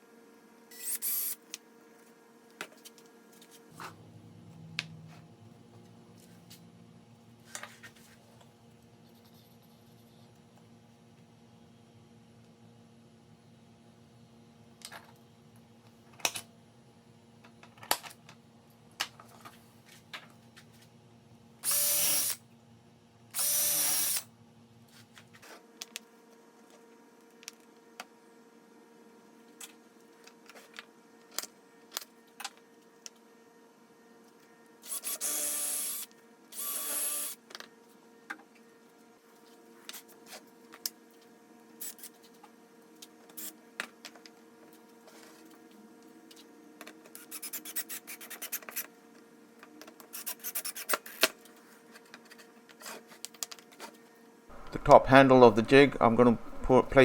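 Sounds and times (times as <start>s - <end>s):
power drill driving screws: 0.7s - 1.4s, 21.6s - 22.4s, 23.4s - 24.2s, 34.9s - 37.4s.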